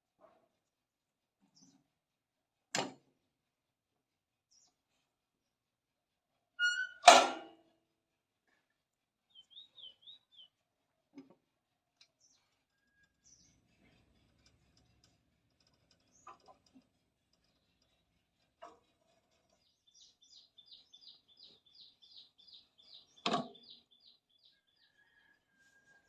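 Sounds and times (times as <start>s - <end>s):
small bird chirping: 9.3s - 10.6s, 19.3s - 25.3s.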